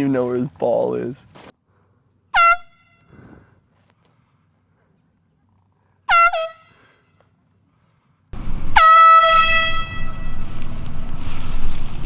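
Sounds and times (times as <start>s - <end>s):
air horn blasts: 8.4s - 12.0s
wind noise on microphone: 8.4s - 12.0s.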